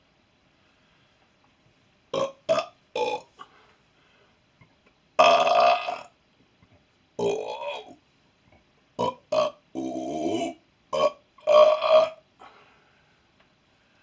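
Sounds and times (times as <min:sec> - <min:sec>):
man burping: 0:02.2 - 0:03.4, 0:05.2 - 0:06.1, 0:07.2 - 0:08.0, 0:09.0 - 0:12.2.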